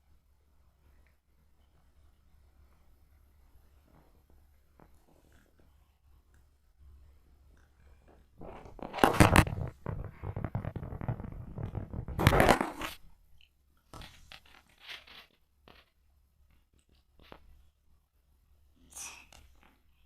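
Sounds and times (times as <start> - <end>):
rustling and crinkling: 7.6 - 17.8.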